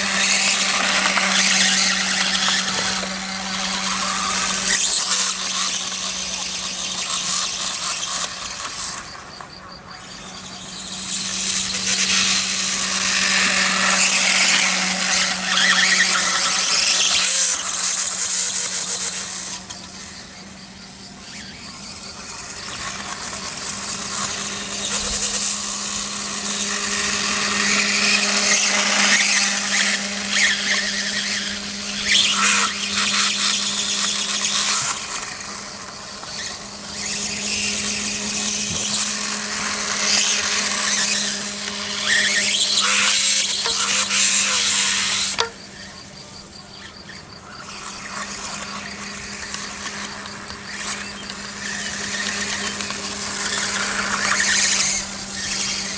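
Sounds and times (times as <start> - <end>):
electric motor whining: 0.0 - 55.9.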